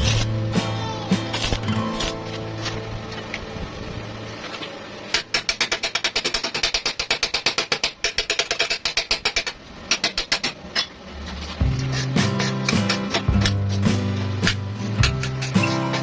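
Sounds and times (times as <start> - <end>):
fast mechanical tapping: 5.1 - 10.6.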